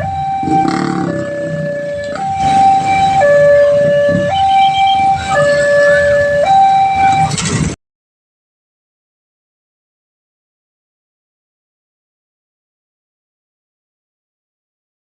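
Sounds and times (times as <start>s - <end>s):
two-tone crossing alarm: 0.0s - 7.4s.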